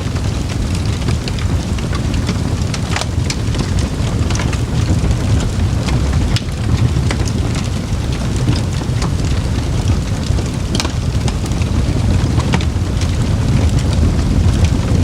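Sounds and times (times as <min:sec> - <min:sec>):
burning wood crackling and popping: 0:00.0 - 0:15.0
campfire flames rumbling: 0:00.0 - 0:15.0.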